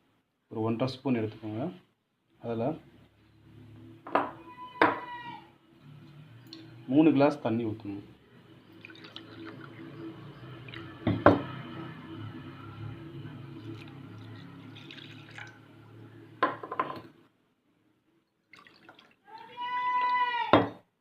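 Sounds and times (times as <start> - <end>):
water pouring into a vessel: 8.4 - 11.9, 13.3 - 16.5, 18.4 - 19.2.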